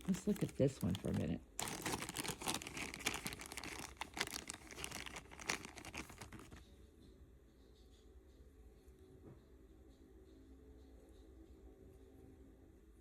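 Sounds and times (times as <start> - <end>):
plastic bag crinkling: 0.0 - 6.6.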